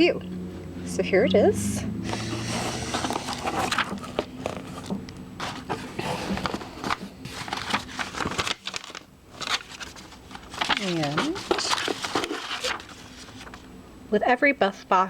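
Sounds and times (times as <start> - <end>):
packaging rustling and crinkling: 2.1 - 13.7.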